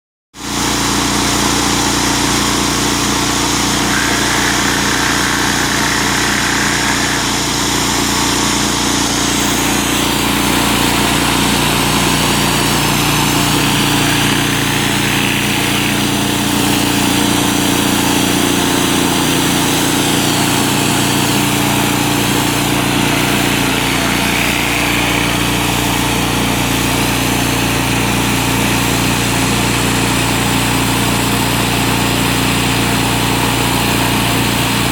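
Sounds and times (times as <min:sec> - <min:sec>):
pressure washer engine running: 0:00.4 - 0:34.9
water spraying onto concrete: 0:01.5 - 0:27.4.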